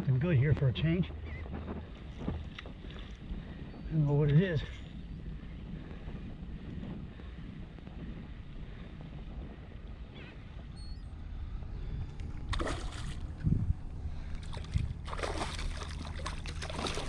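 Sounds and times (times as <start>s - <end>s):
fish splashing at water surface: 12.5s - 13.4s, 14.2s - 17.0s.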